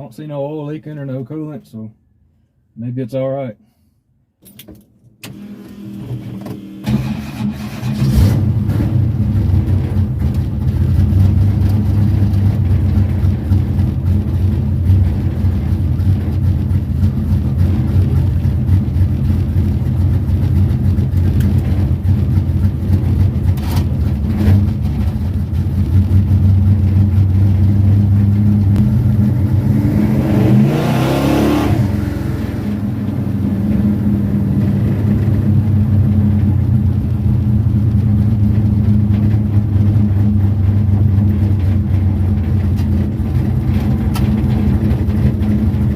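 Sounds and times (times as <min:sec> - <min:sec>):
race car engine idling: 0:08.9 - 0:30.3, 0:31.8 - 0:45.9.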